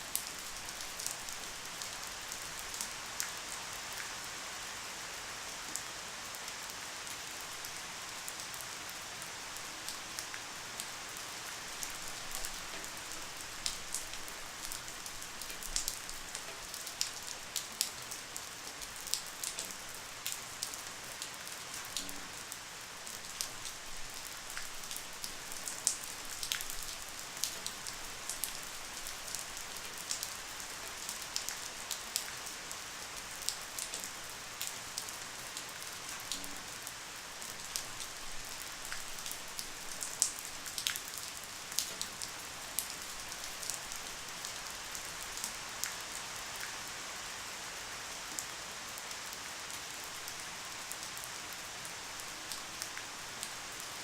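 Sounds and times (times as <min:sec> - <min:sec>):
light rain hiss: 0:00.0 - 0:54.0
raindrops ticking on a surface: 0:05.6 - 0:46.9.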